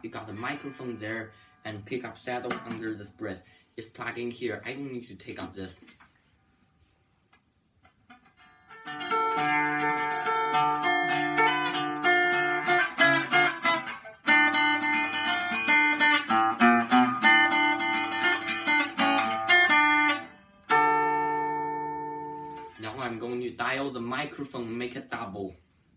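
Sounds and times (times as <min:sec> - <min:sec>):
acoustic guitar playing: 0:00.0 - 0:03.3, 0:08.1 - 0:23.3.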